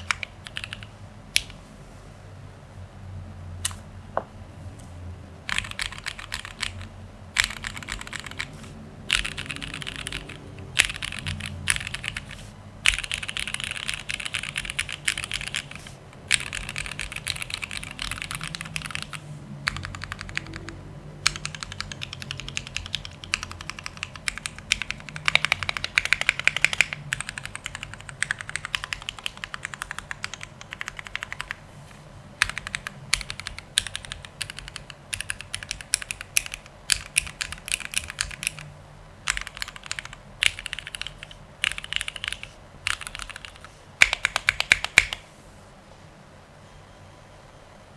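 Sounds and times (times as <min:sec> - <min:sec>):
mechanical keyboard typing: 0:00.0 - 0:01.6, 0:05.5 - 0:31.6, 0:32.4 - 0:45.2.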